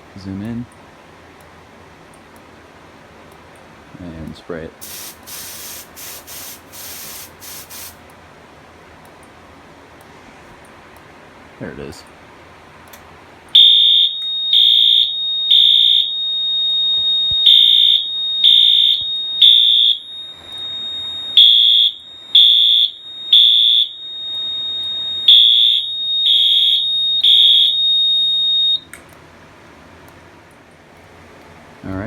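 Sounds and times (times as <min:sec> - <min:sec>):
fire alarm horn blasts: 0:13.5 - 0:28.9
steady high-pitched tone: 0:13.9 - 0:28.9.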